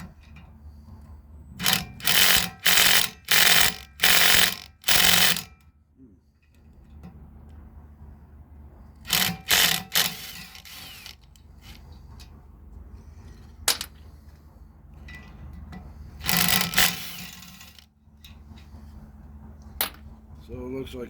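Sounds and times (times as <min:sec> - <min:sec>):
steady low hum: 0:00.0 - 0:21.0
metal scraping and clanking: 0:13.0 - 0:19.0.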